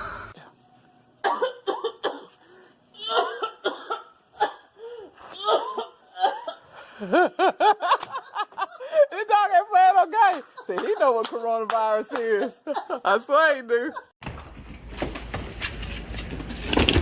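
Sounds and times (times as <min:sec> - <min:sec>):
person coughing: 0:01.2 - 0:02.4, 0:03.0 - 0:06.6.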